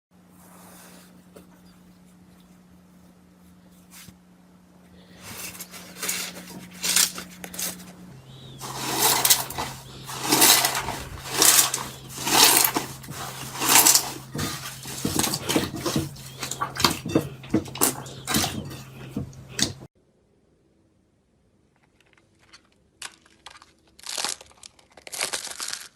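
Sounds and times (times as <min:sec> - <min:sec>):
steady low hum: 0:00.2 - 0:21.5
slime squelching by hand: 0:05.2 - 0:19.9, 0:21.8 - 0:25.9.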